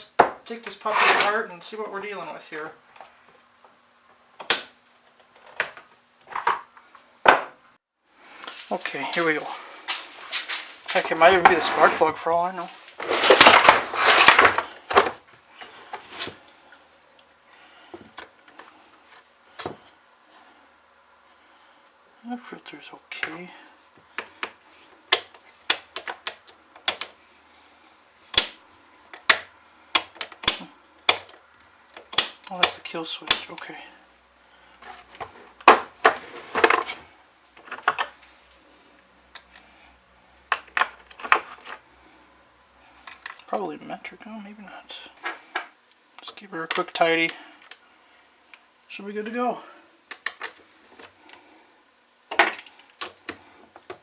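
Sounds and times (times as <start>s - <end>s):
scraping rustle: 0.7s - 1.4s, 8.5s - 16.4s
metal tools clinking on wooden bench: 13.0s - 15.2s, 25.1s - 27.1s, 30.0s - 31.2s, 35.6s - 36.3s
parts tapping and ticking: 25.1s - 27.1s, 29.2s - 31.4s.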